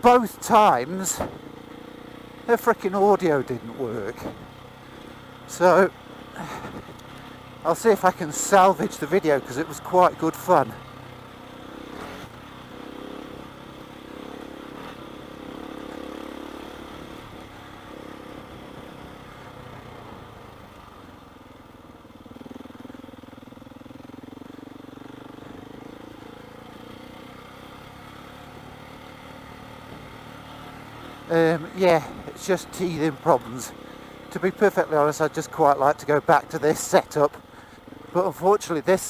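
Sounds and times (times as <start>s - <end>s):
constant rushing noise: 0.0s - 21.6s
motorcycle engine running: 0.0s - 39.0s.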